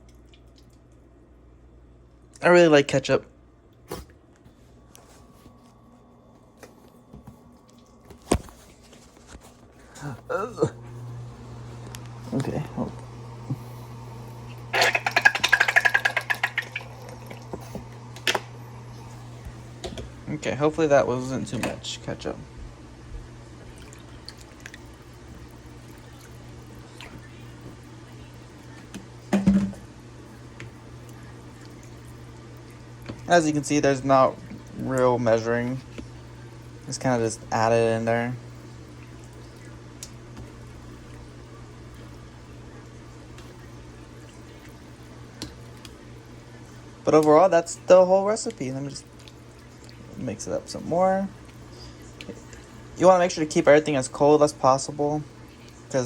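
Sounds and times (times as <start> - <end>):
wet squishing of food in a bowl: 0.0 - 1.1, 3.8 - 10.1, 22.7 - 37.7, 38.4 - 56.0
steady low hum: 0.0 - 56.0.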